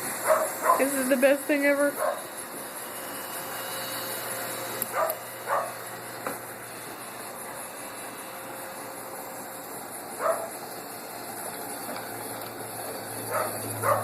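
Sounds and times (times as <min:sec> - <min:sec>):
robot vacuum whirring: 0:00.0 - 0:14.0
dog barking: 0:00.2 - 0:00.9, 0:02.0 - 0:02.2, 0:04.9 - 0:05.8, 0:10.2 - 0:10.5, 0:13.3 - 0:14.0.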